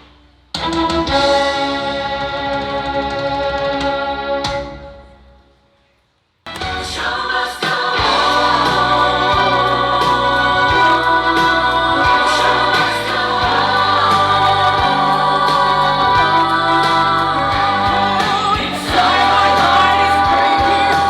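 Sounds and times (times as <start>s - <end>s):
song with singing: 6.6s - 21.0s.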